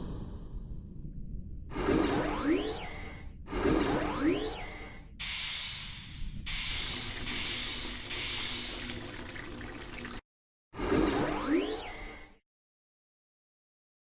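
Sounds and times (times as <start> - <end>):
cartoon water spraying: 5.2 - 9.7.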